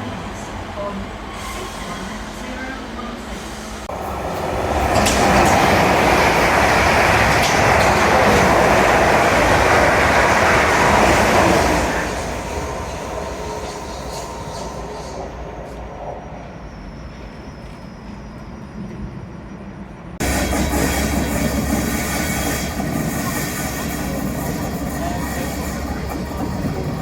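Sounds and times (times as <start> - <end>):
train wheels rushing on rail: 0.0 - 27.0.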